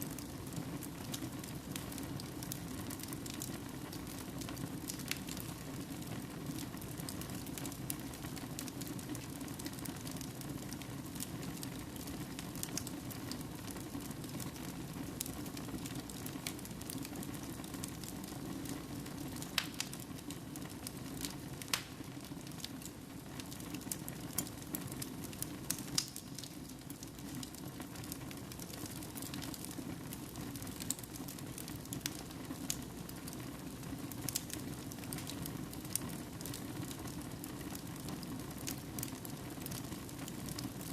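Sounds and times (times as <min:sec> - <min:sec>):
burning logs crackling and popping: 0:00.0 - 0:40.9
wood fire flames rumbling: 0:00.1 - 0:40.9.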